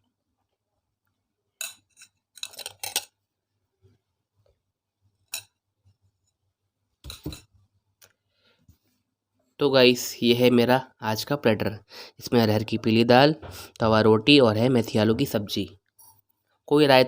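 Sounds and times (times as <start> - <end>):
spoon and dishes clinking: 1.6 - 3.2, 5.3 - 5.6, 7.0 - 7.5.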